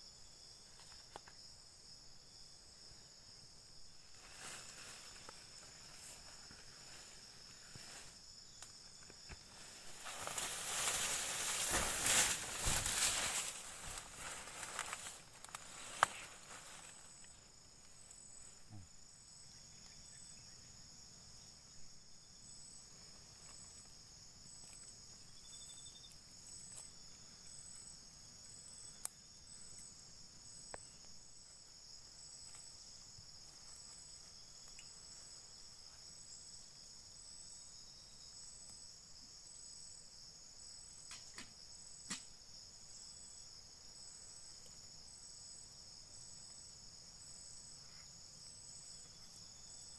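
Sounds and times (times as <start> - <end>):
high-pitched insect chorus: 0.0 - 49.9
faint ticks and clicks: 28.5 - 29.9, 33.6 - 35.0.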